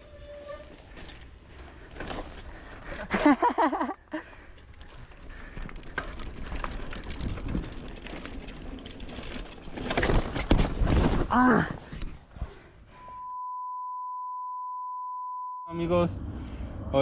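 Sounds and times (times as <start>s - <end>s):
bike tyres rumbling on dirt: 4.4s - 12.2s
bike clicks and knocks: 4.6s - 11.1s.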